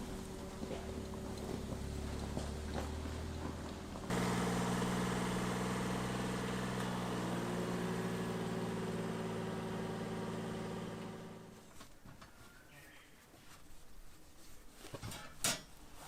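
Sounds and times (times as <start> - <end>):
small engine running: 0.4 - 11.6.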